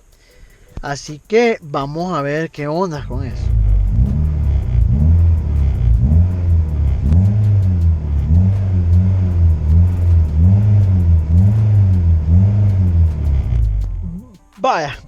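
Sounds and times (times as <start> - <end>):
quick hi-hat ticking: 0.0 - 14.9
sliding deep bass line: 3.0 - 14.4.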